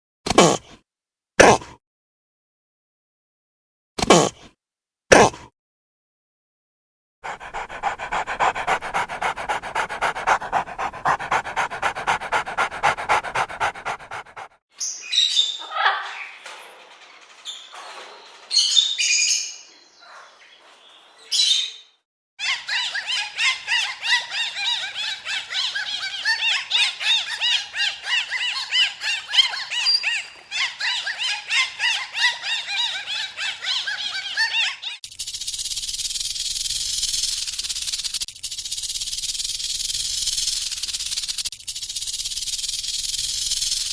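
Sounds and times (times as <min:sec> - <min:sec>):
animal calling: 0:07.2 - 0:14.5, 0:22.4 - 0:35.0.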